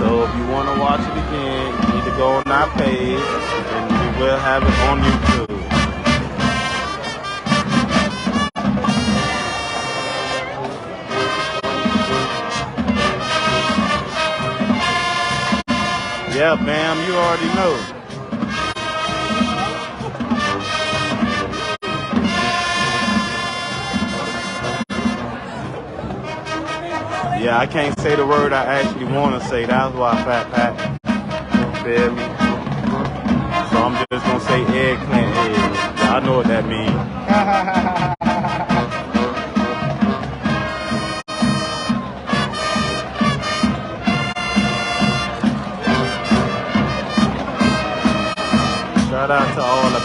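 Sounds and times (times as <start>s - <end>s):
marching band brass chords: 0.0s - 50.0s
low repeating beat: 28.6s - 50.0s.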